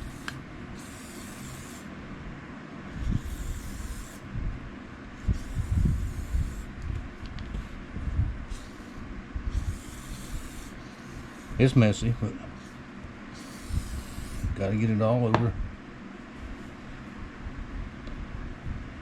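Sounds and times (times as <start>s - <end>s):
aerosol can spraying: 0.0s - 1.9s, 3.1s - 4.2s, 5.3s - 6.7s, 8.5s - 11.6s, 13.4s - 14.6s.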